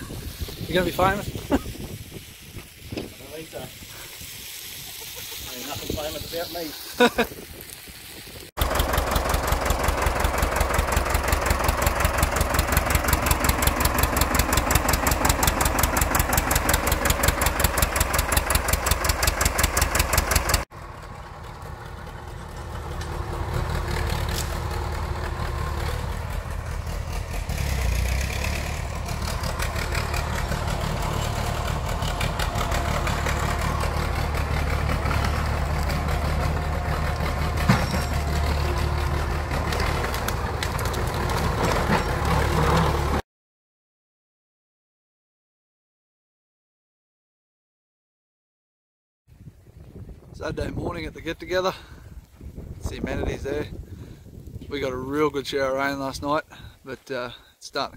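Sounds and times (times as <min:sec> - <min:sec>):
engine rapid pulsing beat: 0:08.6 - 0:20.6
low engine drone: 0:08.6 - 0:43.2.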